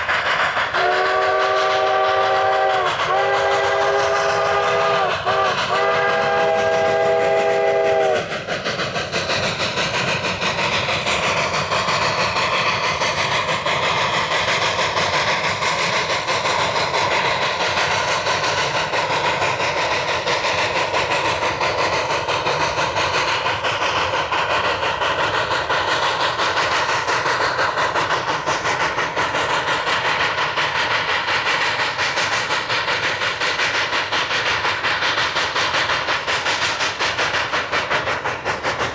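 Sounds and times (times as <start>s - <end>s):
train rumbling on rails: 0.0s - 38.9s
steam locomotive whistle: 0.7s - 8.3s.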